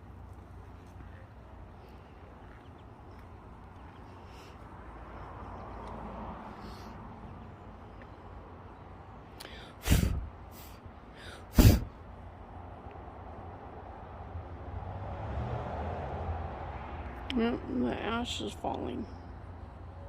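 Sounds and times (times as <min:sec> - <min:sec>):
low outdoor rumble: 0:00.0 - 0:20.0
quick intake of breath: 0:09.4 - 0:12.0
person sneezing: 0:09.8 - 0:10.7, 0:11.3 - 0:12.0.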